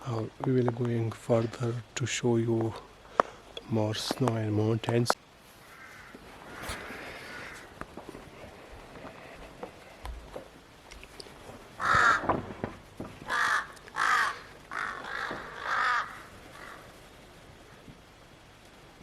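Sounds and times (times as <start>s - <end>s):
crow cawing: 5.6s - 7.8s, 11.8s - 12.5s, 13.2s - 17.0s.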